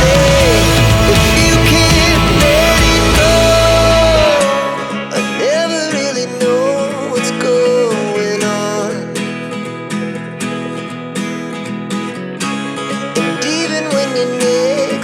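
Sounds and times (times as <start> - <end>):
gliding melody line: 0.0 - 5.8
strummed acoustic guitar: 0.0 - 15.0.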